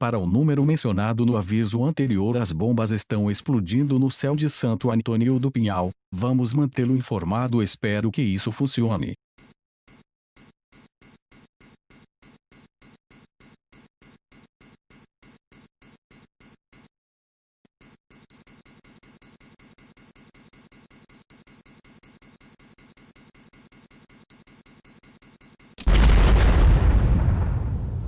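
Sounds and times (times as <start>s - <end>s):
rapid high-pitched electronic beeping: 0.6s - 6.0s, 6.8s - 7.6s.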